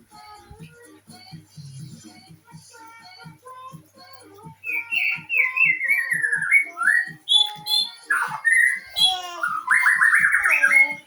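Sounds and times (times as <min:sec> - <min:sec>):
bird singing whistled phrases: 0:04.6 - 0:11.0.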